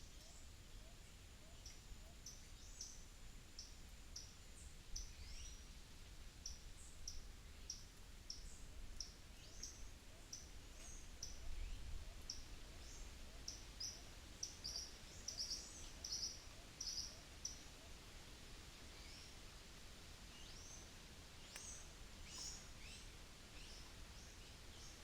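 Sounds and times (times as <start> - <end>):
faint low wind rumble: 0.0 - 25.0
small birds chipping: 20.3 - 25.0.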